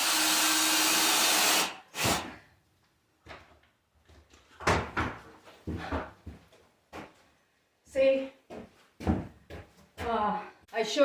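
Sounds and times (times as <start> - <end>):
handling knocks and clunks: 3.2 - 6.5.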